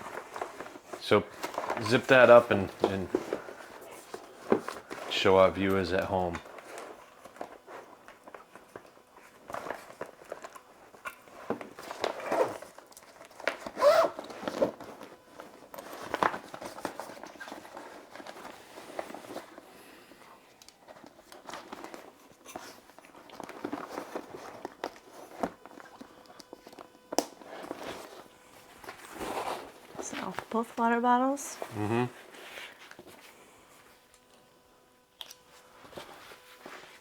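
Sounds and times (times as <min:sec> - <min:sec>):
backpack rustling and scuffing: 0:13.7 - 0:19.6.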